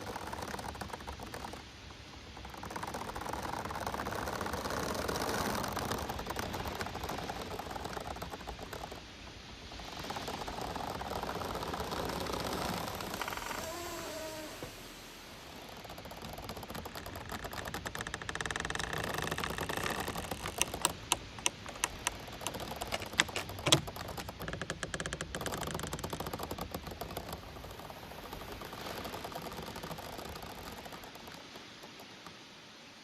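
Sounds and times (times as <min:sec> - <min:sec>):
bamboo stems creaking in wind: 0:00.0 - 0:33.0
bamboo cracking: 0:15.9 - 0:27.1.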